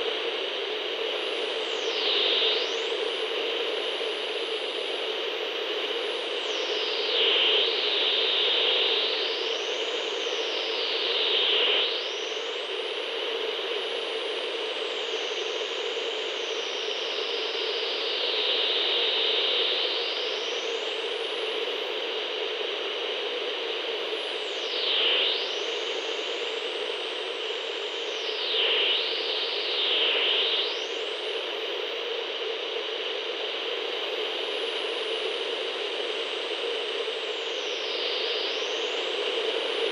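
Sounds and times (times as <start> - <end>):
radio static hiss: 27.5 - 39.9.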